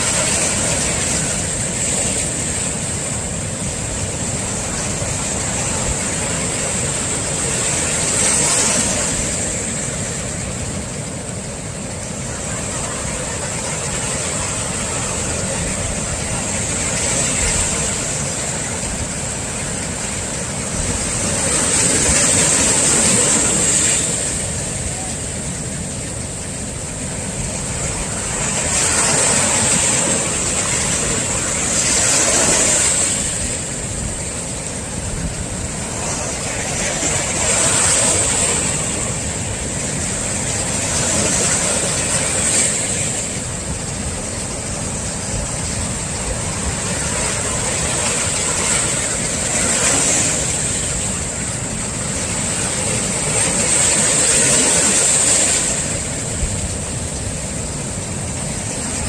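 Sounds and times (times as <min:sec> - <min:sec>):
waves breaking on shore: 0:00.0 - 0:59.0.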